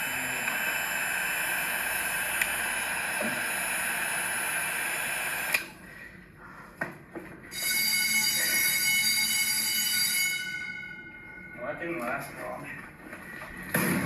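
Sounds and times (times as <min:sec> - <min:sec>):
fire alarm bells ringing: 0:07.5 - 0:12.2.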